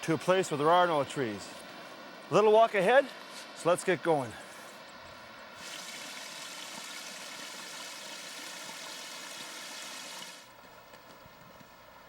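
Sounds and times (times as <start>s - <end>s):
running water rushing: 5.6s - 10.5s.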